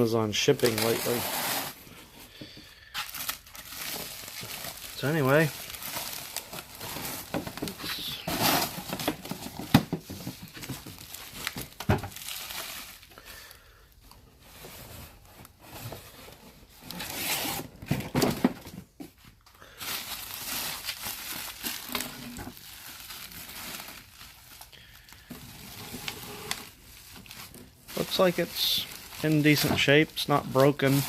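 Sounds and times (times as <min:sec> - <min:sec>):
packaging crinkling: 0:02.8 - 0:09.7, 0:10.4 - 0:13.2, 0:19.7 - 0:31.0.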